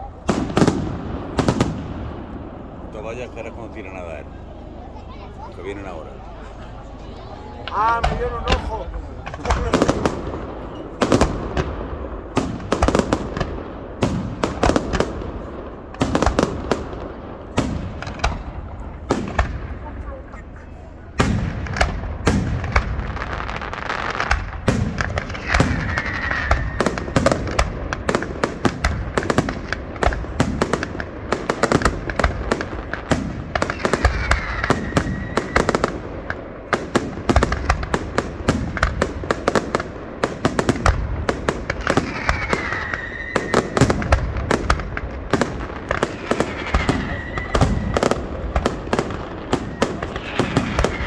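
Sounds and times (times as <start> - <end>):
fireworks bangs and crackles: 0.0 - 51.0
falling whistle: 42.6 - 43.8, 47.0 - 48.0.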